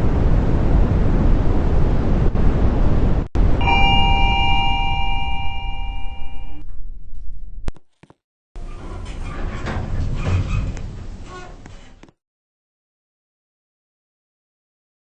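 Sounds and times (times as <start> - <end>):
low rumbling noise: 0.0 - 7.7
two-tone electronic chime: 3.6 - 6.6.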